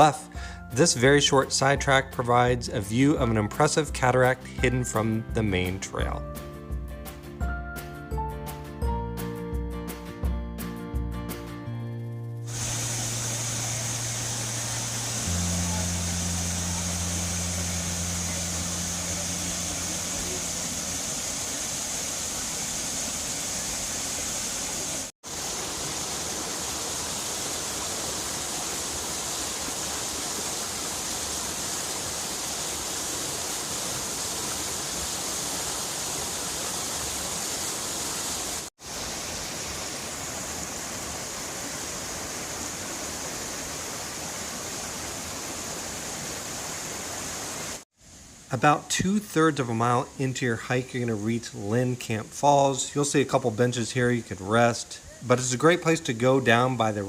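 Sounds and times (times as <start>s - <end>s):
low steady hum: 12.5s - 22.0s
river white water rushing: 12.5s - 47.8s.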